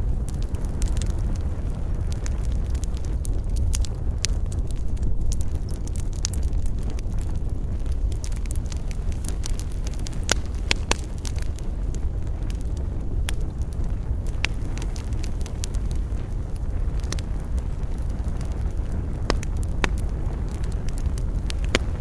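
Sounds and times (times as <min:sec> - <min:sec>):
campfire crackling: 0:00.0 - 0:22.0
low rumble: 0:00.0 - 0:22.0.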